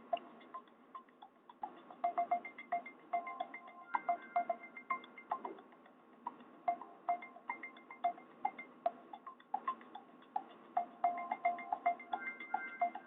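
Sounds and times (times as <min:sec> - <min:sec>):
phone ringtone melody: 0:02.0 - 0:05.4, 0:06.7 - 0:08.2, 0:10.8 - 0:13.0.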